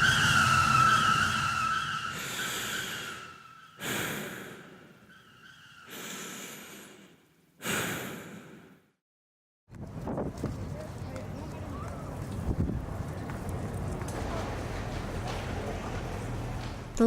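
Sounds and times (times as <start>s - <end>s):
car tyres screeching: 0.0s - 7.0s, 11.6s - 16.9s
person breathing heavily: 2.2s - 5.0s, 5.9s - 8.9s.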